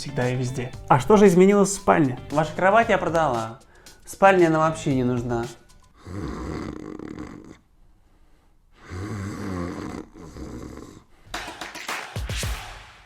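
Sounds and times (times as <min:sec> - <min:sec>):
person snoring: 0:05.9 - 0:07.7, 0:08.8 - 0:11.3.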